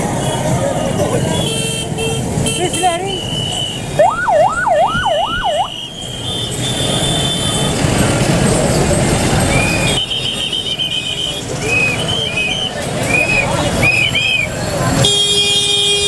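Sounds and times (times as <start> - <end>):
street noise: 0.0 - 16.0
shrill steady tones: 3.1 - 6.5
siren warbling: 4.0 - 5.8.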